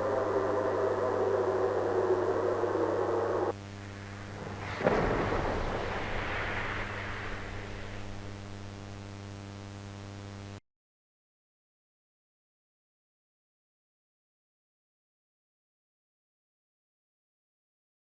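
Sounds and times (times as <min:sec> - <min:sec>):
electrical hum: 0:00.0 - 0:10.6
noise hiss: 0:00.0 - 0:10.6
explosion with rumble: 0:04.2 - 0:08.6.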